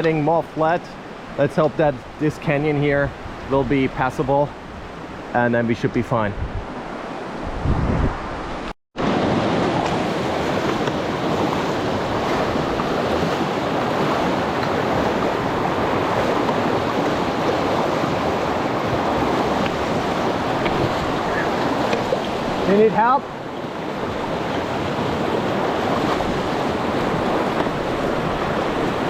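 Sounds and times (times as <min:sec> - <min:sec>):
fast-flowing river rushing: 0:08.3 - 0:29.0.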